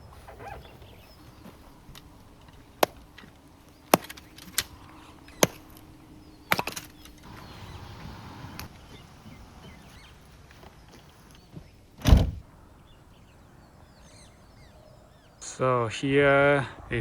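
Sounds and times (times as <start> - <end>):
rattle of small clicks: 1.9 - 7.4.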